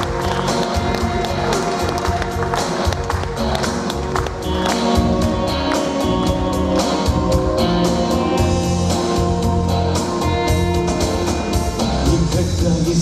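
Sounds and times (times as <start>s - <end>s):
held instrumental chords: 0.0s - 13.0s
steady drum beat: 0.0s - 13.0s.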